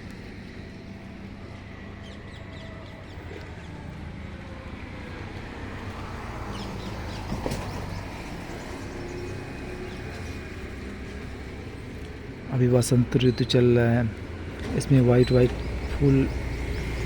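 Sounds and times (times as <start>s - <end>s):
road traffic hum: 0.0s - 17.0s
birds chirping: 6.3s - 17.0s.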